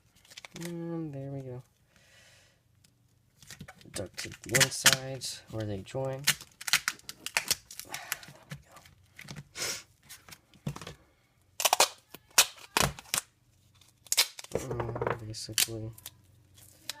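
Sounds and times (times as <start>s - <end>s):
duct tape pulled and torn: 6.1s - 7.9s, 11.6s - 14.8s.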